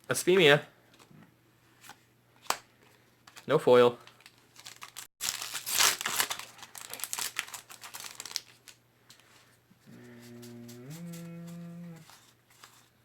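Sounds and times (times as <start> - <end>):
foil wrapper crinkling and tearing: 4.2 - 8.8
low steady hum: 8.6 - 13.0.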